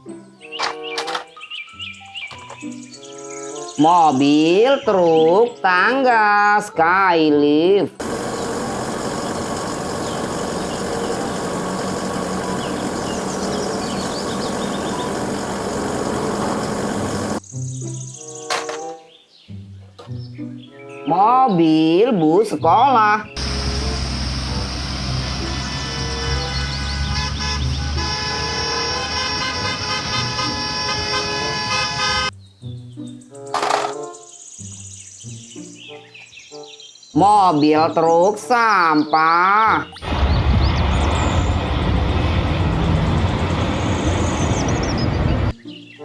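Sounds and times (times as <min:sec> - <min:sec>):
background music: 0:00.0 - 0:15.3, 0:17.4 - 0:40.0, 0:45.5 - 0:46.0
truck engine running: 0:08.0 - 0:17.4, 0:23.4 - 0:32.3, 0:40.0 - 0:45.5
vehicle horn tooting: 0:25.5 - 0:32.3.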